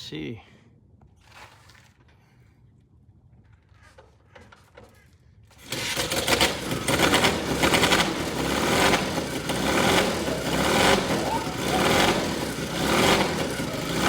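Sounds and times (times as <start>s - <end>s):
motorcycle engine running: 5.6s - 14.0s.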